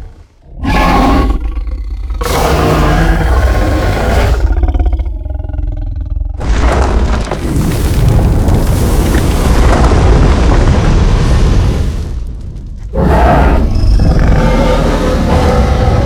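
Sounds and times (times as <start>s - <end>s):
dragon roar blast: 0.5s - 5.2s, 12.9s - 16.0s.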